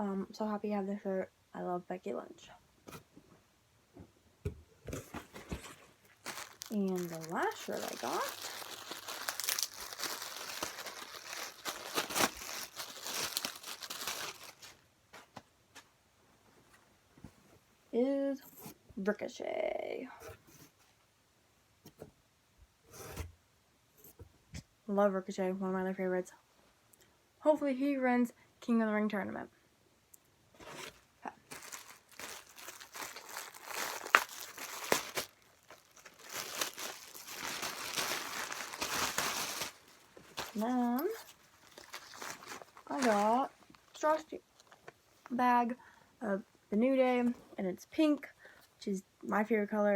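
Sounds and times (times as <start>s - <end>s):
plastic packaging crinkling: 5.0s - 14.8s, 30.6s - 44.9s.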